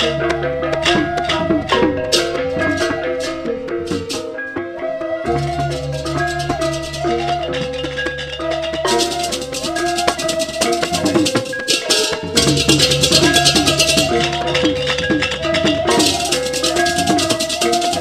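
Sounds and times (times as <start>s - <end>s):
metallophones ringing melody: 0.0s - 18.0s
low gong drone: 4.8s - 18.0s
fast clashing cymbals: 5.3s - 18.0s.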